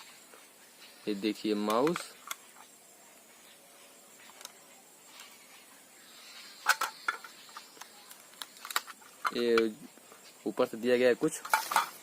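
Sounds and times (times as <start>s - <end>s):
faint hiss: 0.0s - 12.0s
plastic packaging clicks and crackles: 6.7s - 9.7s.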